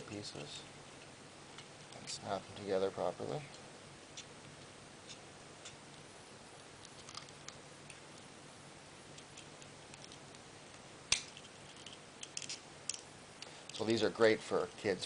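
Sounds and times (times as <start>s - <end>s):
plastic toy parts clicking: 11.1s - 13.0s.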